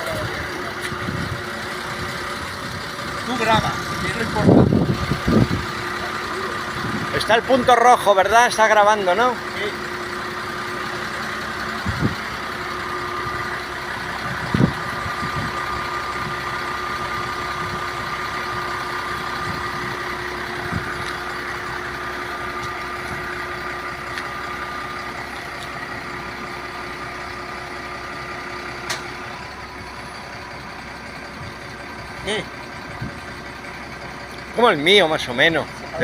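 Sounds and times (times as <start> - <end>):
engine idling with whine: 0.0 - 36.0.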